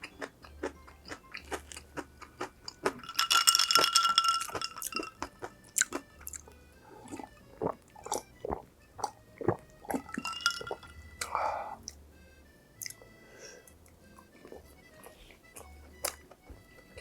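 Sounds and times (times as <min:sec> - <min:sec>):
crunchy bites of fried food: 0:00.0 - 0:03.0, 0:04.8 - 0:10.0.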